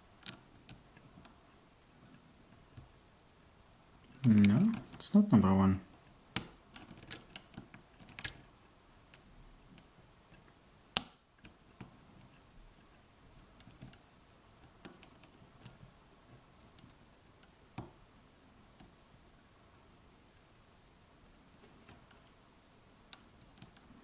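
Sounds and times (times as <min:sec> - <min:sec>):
lock pick clicking in padlock: 0:06.4 - 0:08.4.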